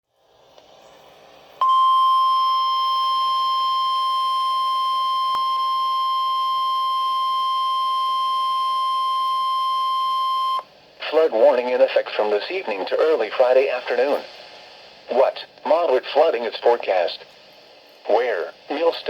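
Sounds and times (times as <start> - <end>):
faint hiss: 0.1 - 1.6, 10.6 - 19.0
steady alarm beep: 1.6 - 10.6.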